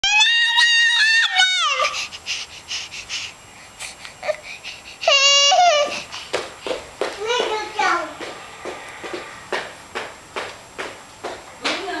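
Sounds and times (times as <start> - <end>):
baby wailing: 0.0 - 2.1, 4.2 - 6.1
baby sobbing: 4.0 - 6.4.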